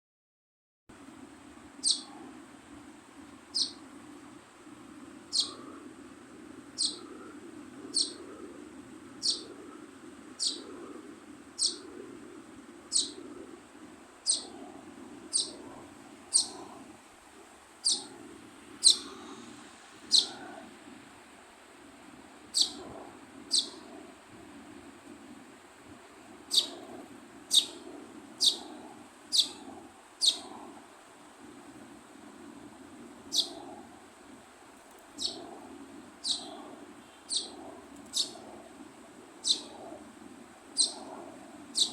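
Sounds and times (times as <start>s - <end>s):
low background hum: 1.0s - 41.9s
baby sparrow chirping: 1.8s - 2.1s, 3.5s - 3.8s, 5.3s - 5.6s, 6.8s - 7.1s, 7.9s - 8.2s, 9.2s - 9.5s, 10.4s - 10.7s, 11.6s - 11.9s, 12.9s - 13.2s, 14.2s - 14.6s, 15.3s - 15.6s, 16.3s - 16.7s, 17.8s - 18.1s, 18.8s - 19.5s, 20.1s - 20.6s, 22.5s - 22.9s, 23.5s - 23.8s, 26.5s - 26.9s, 27.5s - 27.8s, 28.4s - 30.6s, 33.3s - 33.8s, 35.2s - 35.5s, 36.2s - 38.5s, 39.4s - 39.9s, 40.8s - 41.9s.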